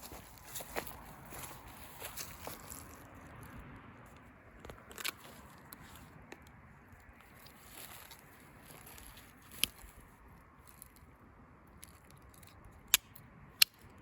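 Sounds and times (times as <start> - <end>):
faint crackling handling noise: 0.0 - 11.1
sharp clicks: 11.8 - 14.0.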